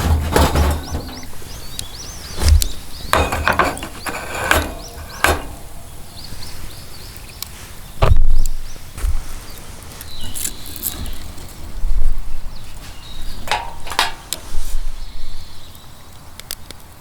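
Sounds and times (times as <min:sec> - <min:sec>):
wooden knocks and thuds: 0:00.0 - 0:01.6, 0:02.3 - 0:05.8, 0:08.0 - 0:09.4
small birds chirping: 0:00.1 - 0:17.0.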